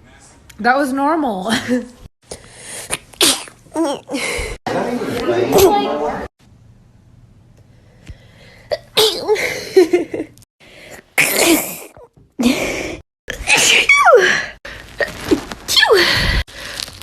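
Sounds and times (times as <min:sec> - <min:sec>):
person sneezing: 0:02.7 - 0:03.6, 0:11.2 - 0:12.0.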